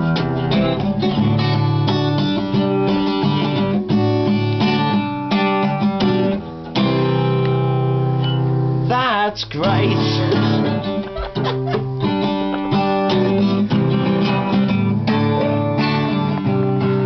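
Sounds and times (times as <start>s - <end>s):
acoustic guitar strumming chords: 0.0s - 17.0s
person singing: 8.9s - 11.0s.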